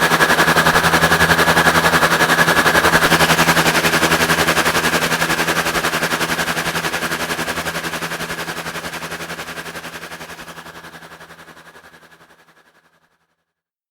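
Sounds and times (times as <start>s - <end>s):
synthesised steam locomotive chuffs: 0.0s - 12.5s.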